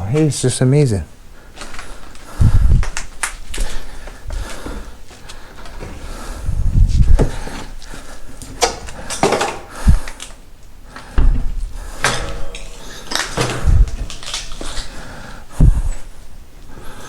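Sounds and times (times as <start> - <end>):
heavy thumps: 5.6 - 7.8, 11.0 - 16.2
clattering of loose junk: 8.4 - 10.4, 11.0 - 16.1.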